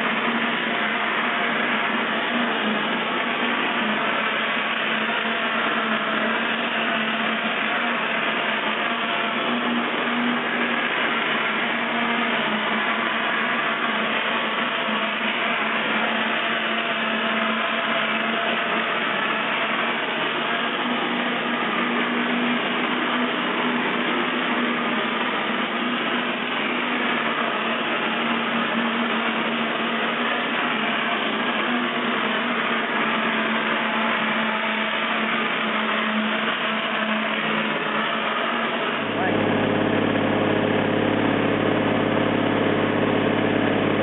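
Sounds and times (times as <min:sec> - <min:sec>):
mortar spraying rig whirring: 0:00.0 - 0:44.0
steady low hum: 0:39.0 - 0:44.0.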